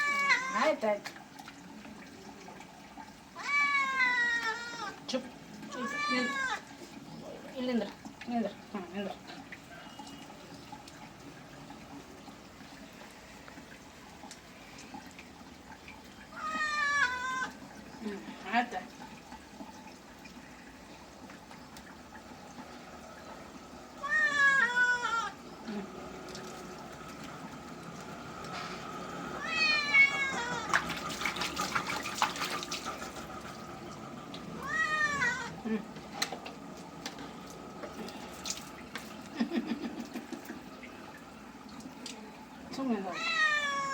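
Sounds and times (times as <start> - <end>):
cat meowing: 0.0 - 0.6, 3.4 - 5.0, 16.3 - 17.6, 24.0 - 25.4, 29.4 - 30.7, 34.6 - 35.6, 43.1 - 43.9
water dripping and trickling: 0.0 - 43.9.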